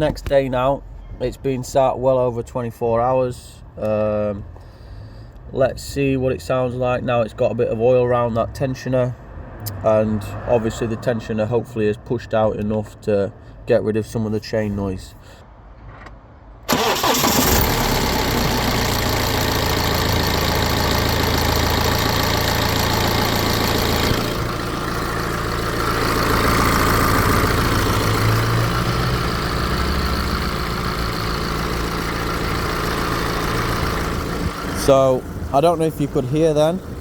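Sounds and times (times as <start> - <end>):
diesel engine starting and idling: 16.6 - 37.0.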